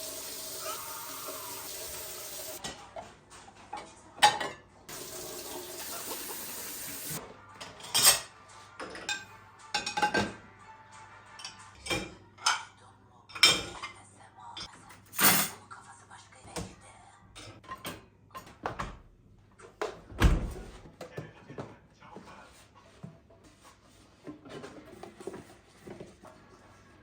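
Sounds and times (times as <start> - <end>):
kitchen tap running: 0.0 - 2.6, 4.9 - 7.2
dishes and cutlery clattering: 2.2 - 10.4, 11.4 - 14.0, 14.6 - 15.6, 17.4 - 18.6.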